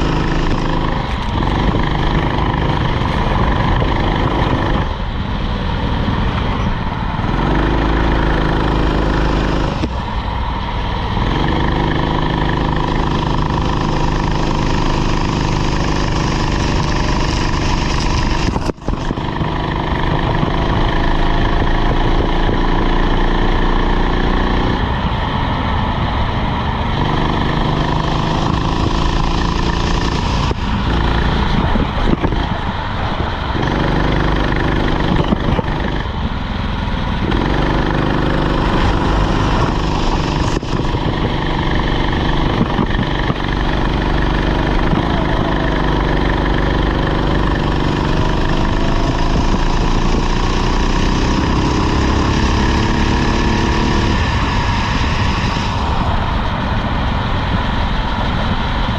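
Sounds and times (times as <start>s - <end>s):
go-kart engine running hard: 0.0s - 58.9s
wind and road noise: 0.0s - 58.9s.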